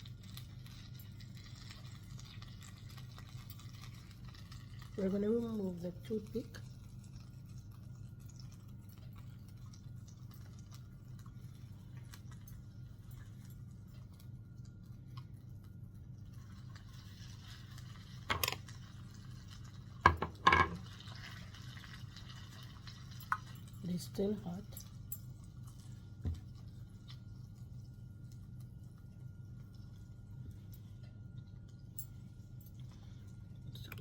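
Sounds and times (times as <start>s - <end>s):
utensils clinking on baking dish: 20.1s - 20.9s
steady low hum: 22.6s - 34.0s.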